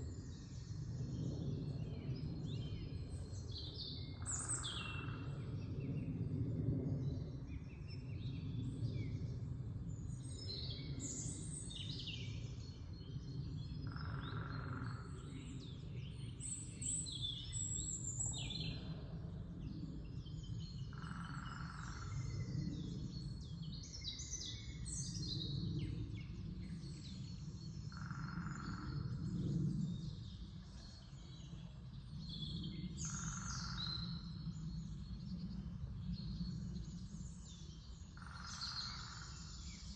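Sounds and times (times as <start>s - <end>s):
songbirds singing and chirping: 0.0s - 39.9s
steady low rumble: 28.6s - 38.1s.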